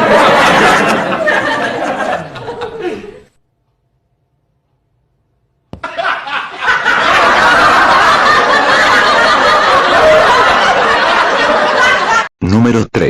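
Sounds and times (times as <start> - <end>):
crowd laughing: 0.0 - 3.4, 5.8 - 12.3.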